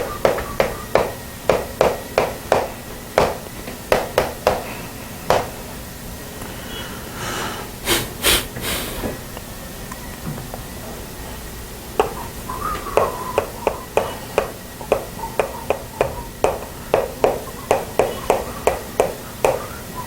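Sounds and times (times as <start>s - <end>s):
sharp taps on hard surface: 0.2s - 4.7s, 13.0s - 19.6s
short hissing noises: 6.6s - 9.2s.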